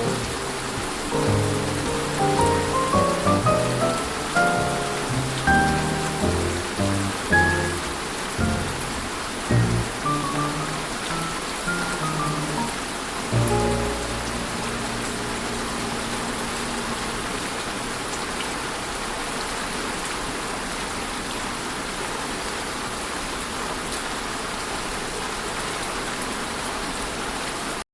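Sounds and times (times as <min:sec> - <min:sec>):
steady rain falling: 0:00.0 - 0:27.8.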